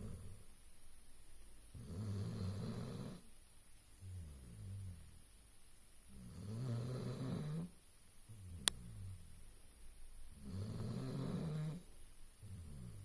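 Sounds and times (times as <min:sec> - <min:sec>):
dog snoring: 0:00.0 - 0:00.4, 0:01.8 - 0:03.3, 0:04.0 - 0:05.2, 0:06.1 - 0:07.8, 0:10.4 - 0:13.0.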